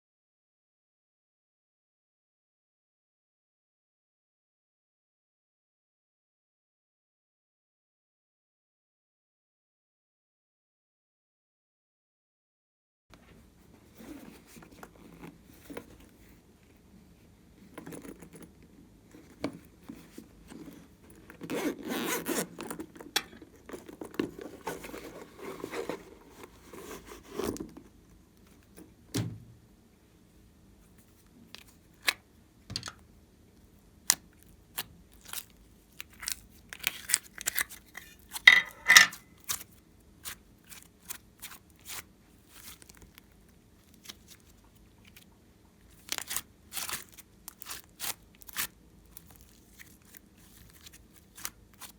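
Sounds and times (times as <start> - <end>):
scraping and crinkling: 19.1 - 27.8.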